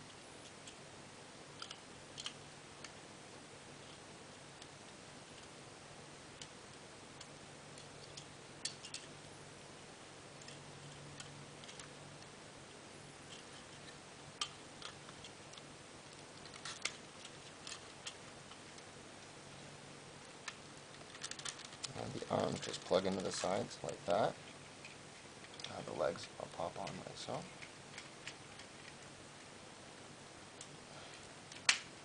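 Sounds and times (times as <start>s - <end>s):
faint steady hum: 0.0s - 32.0s
plastic toy parts clicking: 1.6s - 2.4s, 7.8s - 9.1s, 10.4s - 11.9s, 13.3s - 18.6s, 20.4s - 23.6s.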